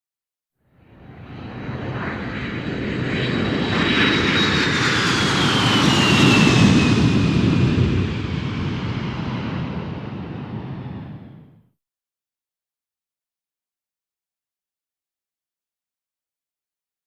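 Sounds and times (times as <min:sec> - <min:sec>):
fighter jet flying past: 0:00.8 - 0:11.6.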